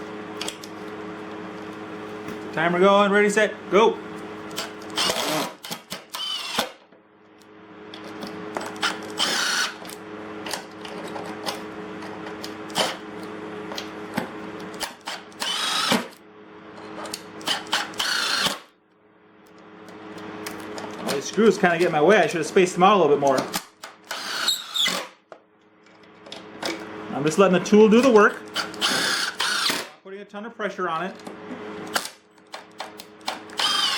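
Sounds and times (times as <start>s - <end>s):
impact driver driving screws: 4.5s - 6.8s, 8.6s - 9.9s, 14.8s - 16.2s, 17.4s - 18.7s, 23.5s - 25.2s, 28.5s - 29.9s, 31.9s - 33.9s.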